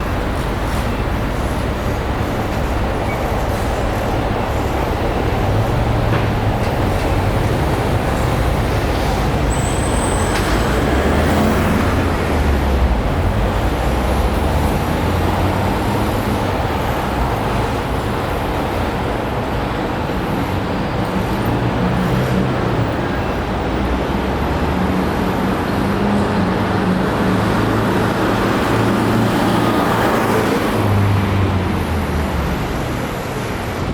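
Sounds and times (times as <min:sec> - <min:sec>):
passing vehicles: 0:00.0 - 0:33.9
brief high squeal: 0:09.5 - 0:10.8.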